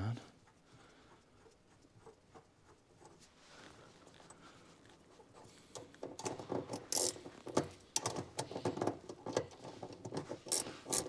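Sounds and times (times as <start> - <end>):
hand ratchet clicking: 6.8 - 7.2, 10.4 - 11.0
metallic rasps: 6.8 - 7.2, 10.5 - 11.0.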